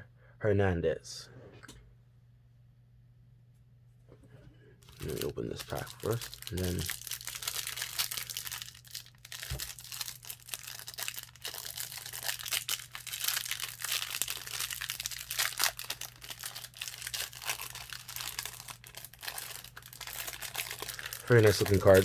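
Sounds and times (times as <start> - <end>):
plastic wrapper crinkling and tearing: 4.8 - 22.0.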